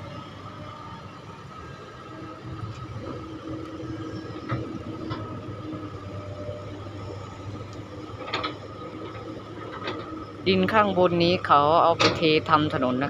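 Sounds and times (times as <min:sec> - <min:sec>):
excavator diesel engine running: 0:00.0 - 0:13.0.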